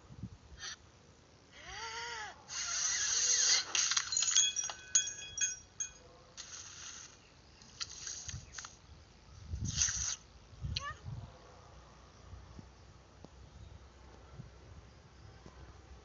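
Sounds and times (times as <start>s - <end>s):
burst of hiss-like noise: 2.5s - 4.2s, 6.4s - 8.8s, 9.6s - 10.3s
light clinks and taps: 3.8s - 6.1s.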